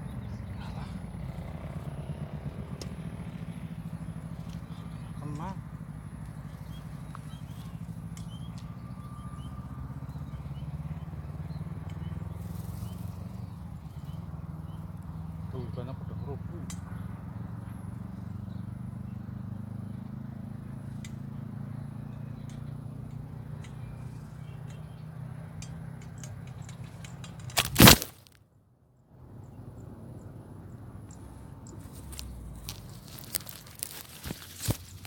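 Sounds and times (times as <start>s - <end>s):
camera falling over knock: 27.5s - 28.2s.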